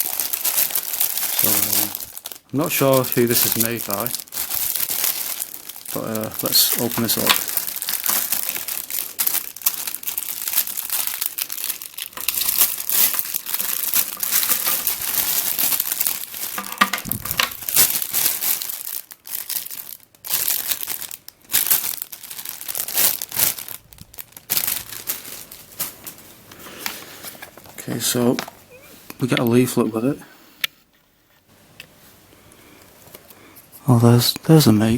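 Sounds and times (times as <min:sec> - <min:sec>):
packaging tearing and crinkling: 0:00.0 - 0:26.2.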